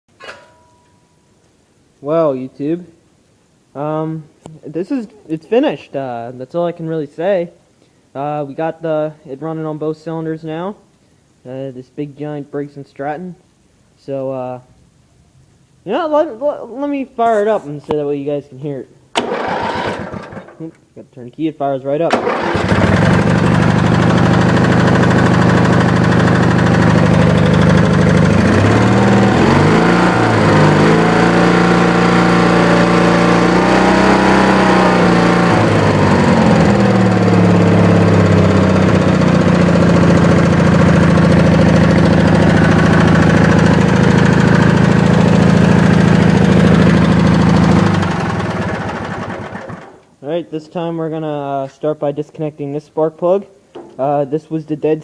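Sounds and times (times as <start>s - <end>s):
garden tractor engine running: 19.2s - 20.7s, 22.1s - 50.0s.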